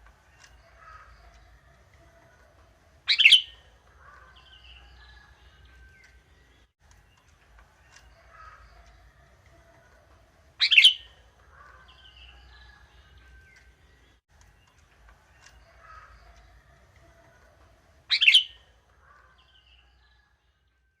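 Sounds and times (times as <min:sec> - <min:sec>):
faint bird chirps: 0:03.1 - 0:09.8, 0:10.6 - 0:17.4, 0:18.1 - 0:20.8.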